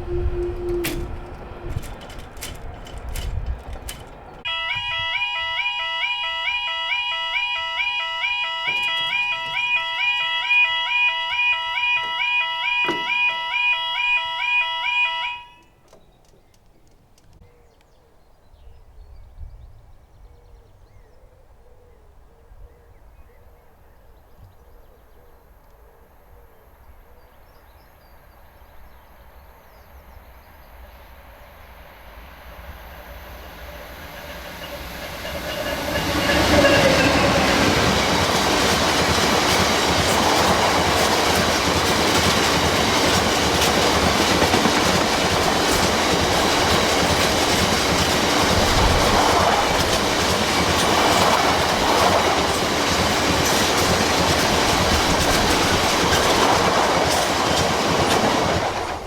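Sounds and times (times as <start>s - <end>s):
quiet outdoor background: 0.0s - 59.0s
warbling alarm tone: 4.5s - 15.6s
steady alarm beep: 4.5s - 15.7s.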